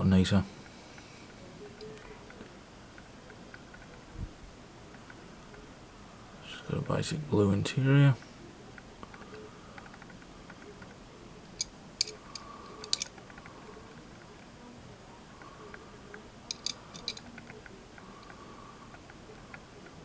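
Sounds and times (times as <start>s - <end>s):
model car clicking and tapping: 16.5s - 17.5s.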